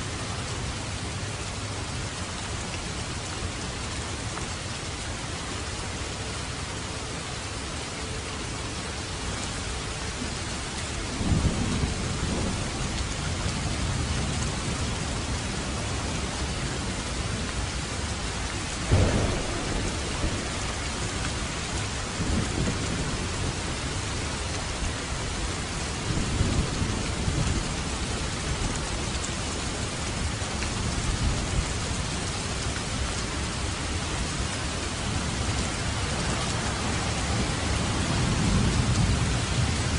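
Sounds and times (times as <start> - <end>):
steady rain: 0.0 - 39.9
thunder rumbling: 11.2 - 16.6, 18.0 - 29.2, 35.0 - 39.9.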